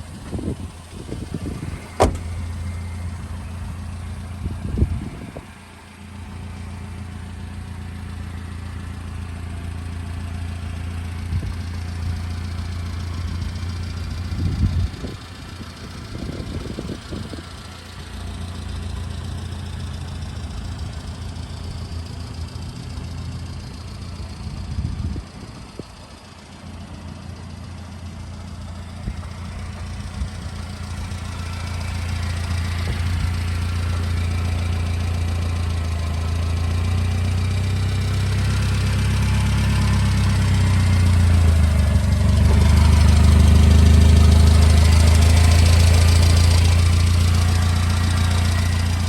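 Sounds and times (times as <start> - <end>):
truck engine idling: 0.0 - 49.0
brief louder bumps: 0.2 - 2.7.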